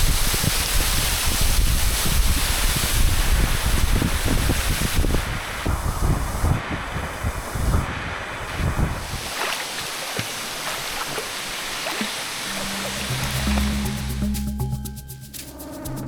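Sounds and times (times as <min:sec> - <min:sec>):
wind buffeting microphone: 0:00.0 - 0:11.2
waterfall water rushing: 0:00.0 - 0:14.2.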